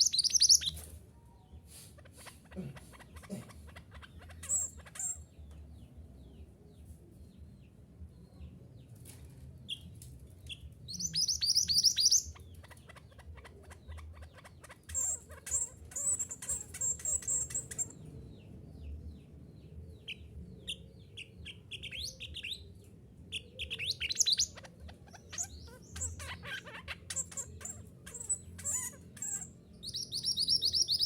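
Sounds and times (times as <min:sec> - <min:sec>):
bird calling high chirps: 0:00.0 - 0:00.8, 0:10.9 - 0:12.5, 0:23.3 - 0:31.0
bird trilling: 0:00.0 - 0:00.8, 0:03.7 - 0:05.3, 0:10.9 - 0:18.0, 0:23.3 - 0:31.0.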